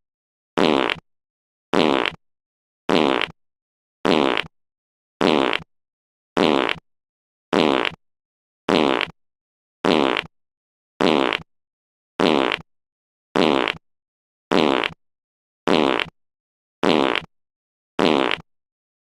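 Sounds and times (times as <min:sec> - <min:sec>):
fart sound effect: 0:00.6 - 0:01.0, 0:01.7 - 0:02.2, 0:02.9 - 0:03.4, 0:04.0 - 0:04.5, 0:05.2 - 0:05.7, 0:06.4 - 0:06.8, 0:07.5 - 0:08.0, 0:08.7 - 0:09.1, 0:09.8 - 0:10.3, 0:11.0 - 0:11.5, 0:12.2 - 0:12.6, 0:13.4 - 0:13.8, 0:14.5 - 0:15.0, 0:15.7 - 0:16.1, 0:16.8 - 0:17.3, 0:18.0 - 0:18.4.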